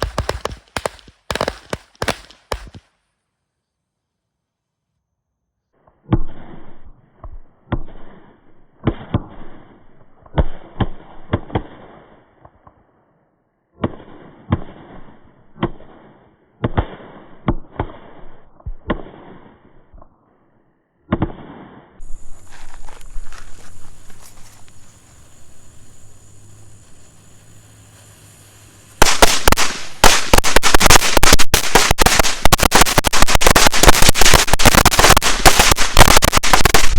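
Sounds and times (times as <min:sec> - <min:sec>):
firecrackers banging: 0:00.0 - 0:02.9, 0:22.0 - 0:36.9.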